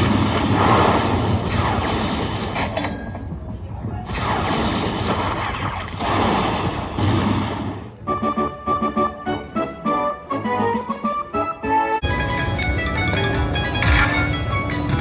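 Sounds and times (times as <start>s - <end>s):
slot machine electronic effects: 12.0s - 15.0s.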